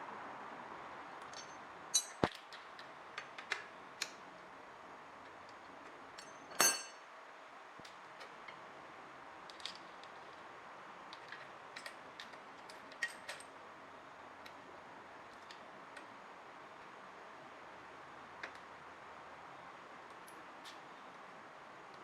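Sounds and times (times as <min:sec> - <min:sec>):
tools clicking and tapping: 0:01.3 - 0:02.4.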